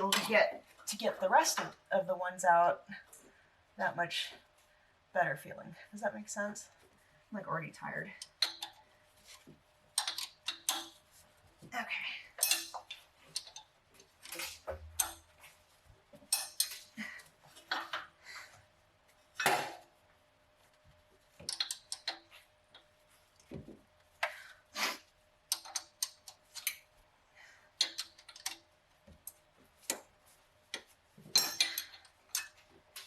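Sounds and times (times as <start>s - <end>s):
wrench clinking on metal bolts: 10.0s - 11.0s, 12.4s - 13.6s, 16.2s - 16.9s, 21.4s - 22.2s, 31.3s - 32.6s.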